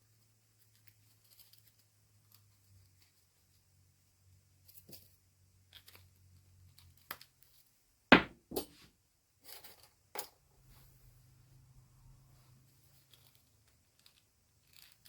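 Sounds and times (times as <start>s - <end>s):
sharp knock: 8.1s - 8.7s
plastic pieces clicking and rustling: 12.9s - 15.0s.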